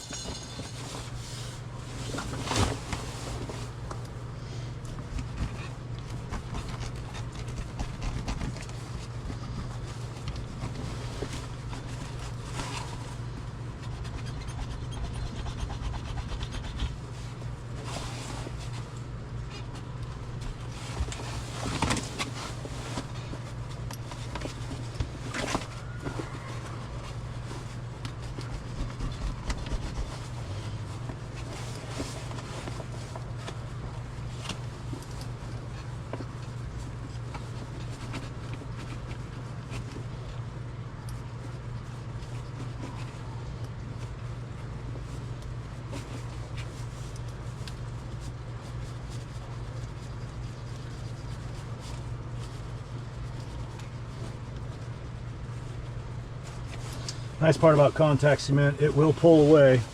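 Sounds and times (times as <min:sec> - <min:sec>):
steady low hum: 0:00.0 - 0:59.9
hands rubbing rubbery material: 0:05.0 - 0:40.2.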